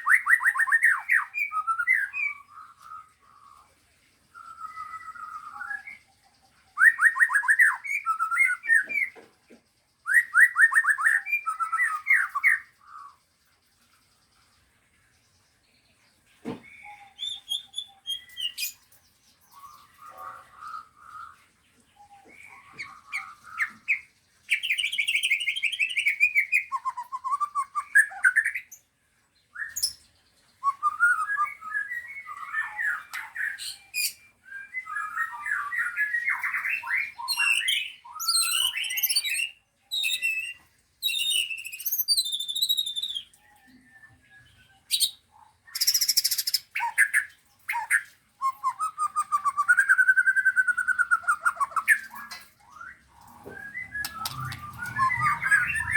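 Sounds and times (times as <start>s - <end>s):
songbirds warbling and trilling: 0.0s - 55.9s.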